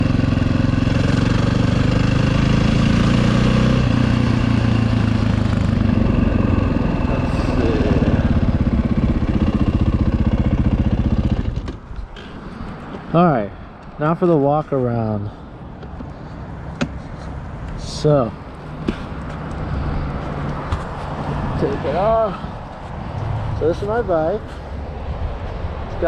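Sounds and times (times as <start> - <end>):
motorcycle engine idling: 4.6 - 11.7.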